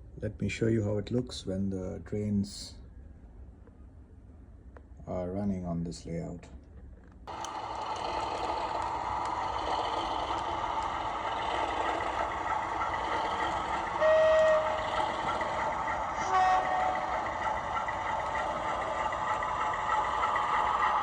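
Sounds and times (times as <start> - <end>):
model train running: 7.3 - 21.0
locomotive horn toots: 14.0 - 14.8, 16.2 - 17.2.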